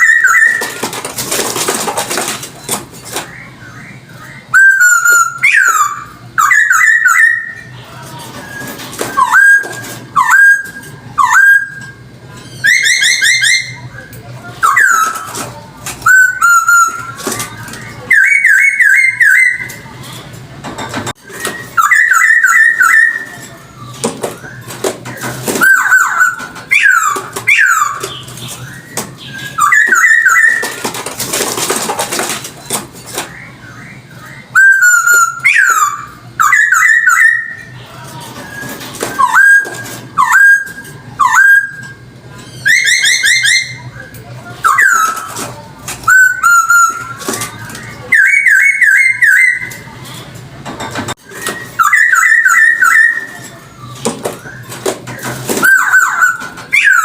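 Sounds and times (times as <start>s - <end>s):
songbird whistling phrases: 3.3s - 7.7s, 8.5s - 15.4s, 16.0s - 19.9s, 21.2s - 24.7s, 25.6s - 30.8s, 33.3s - 37.8s, 38.4s - 45.4s, 47.8s - 49.9s, 51.4s - 57.0s.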